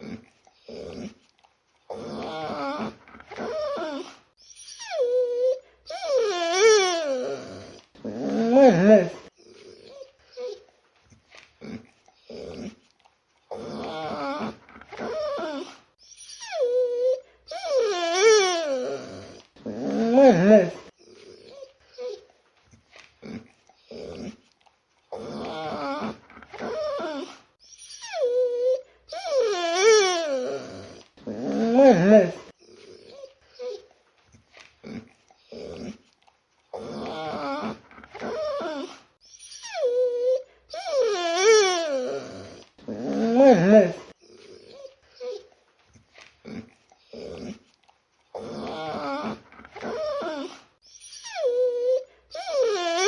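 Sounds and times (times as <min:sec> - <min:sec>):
small dog whining: 0:01.9 - 0:10.7, 0:13.5 - 0:22.3, 0:25.1 - 0:33.9, 0:36.7 - 0:45.6, 0:48.4 - 0:53.0.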